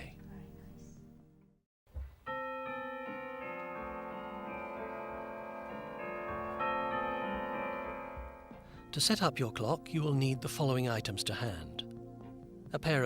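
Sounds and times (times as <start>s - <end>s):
piano playing slow held notes: 2.3s - 10.8s.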